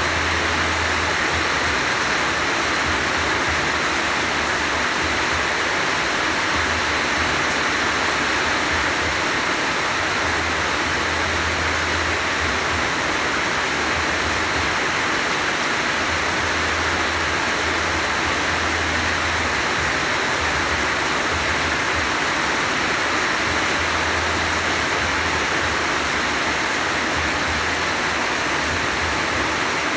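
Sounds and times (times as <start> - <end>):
heavy rain hissing: 0.0 - 29.9.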